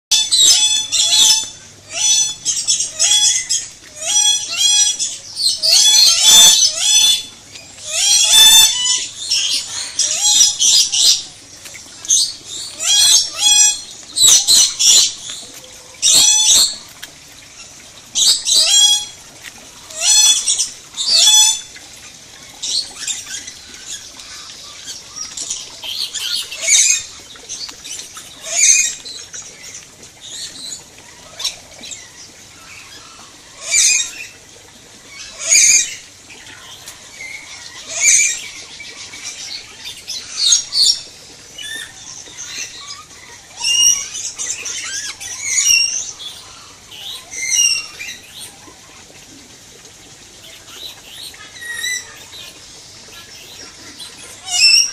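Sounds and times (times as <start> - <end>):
birds squawking shrilly: 0.1 - 29.4, 50.5 - 54.9.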